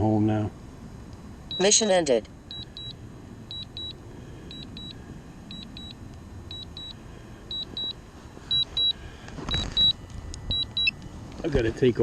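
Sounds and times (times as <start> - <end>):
low steady rumble: 0.0 - 12.0
remote controller beeping: 1.5 - 1.8, 2.5 - 11.0.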